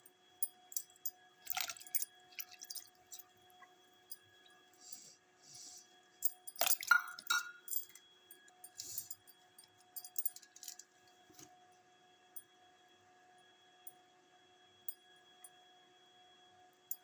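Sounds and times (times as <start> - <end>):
faint steady hum: 0.0 - 17.0
metal utensils clinking: 6.6 - 7.9.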